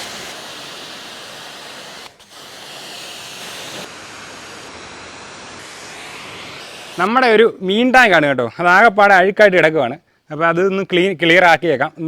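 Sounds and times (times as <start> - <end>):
pressure washer spraying water: 0.0 - 7.4.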